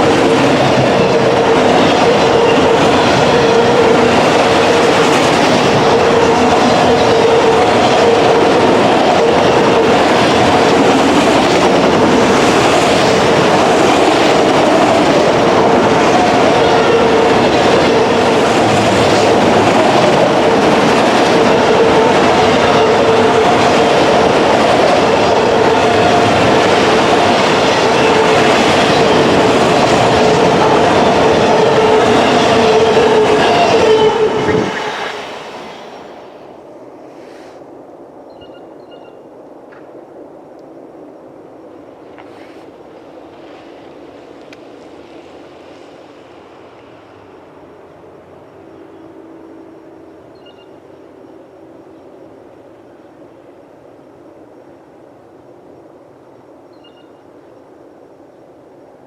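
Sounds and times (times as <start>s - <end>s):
wheels clattering on rail: 0.0s - 36.4s.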